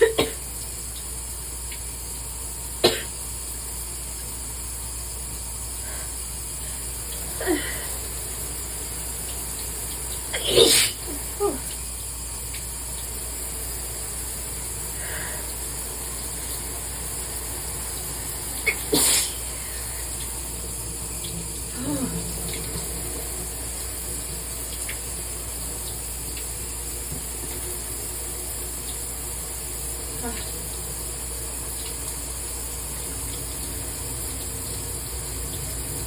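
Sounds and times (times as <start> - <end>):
shower water running: 0.0 - 36.0
person sneezing: 10.3 - 11.6, 18.7 - 19.4.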